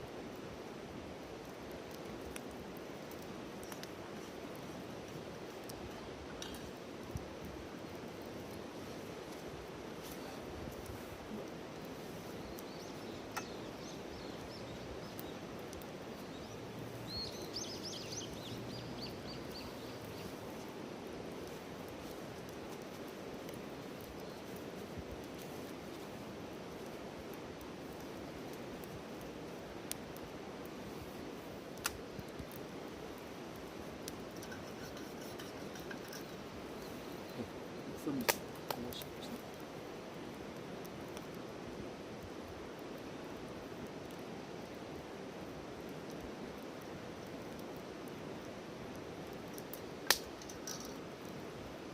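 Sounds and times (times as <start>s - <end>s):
background hiss: 0.0s - 51.9s
fire crackling pops: 0.0s - 51.9s
songbird singing: 12.2s - 20.7s, 34.4s - 39.4s
sharp crack: 31.8s - 32.1s, 38.1s - 39.4s, 49.6s - 51.0s.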